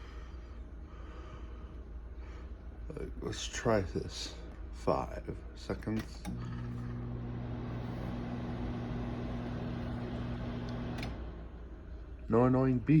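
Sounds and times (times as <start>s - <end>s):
microwave fan noise: 0.0s - 13.0s
microwave oven humming: 5.5s - 13.0s.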